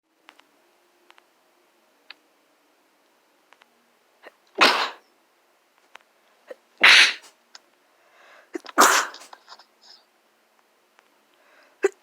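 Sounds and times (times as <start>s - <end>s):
person sneezing: 4.2s - 5.0s, 6.5s - 7.3s, 8.6s - 10.0s
soft breath in: 7.9s - 8.6s, 11.4s - 11.8s.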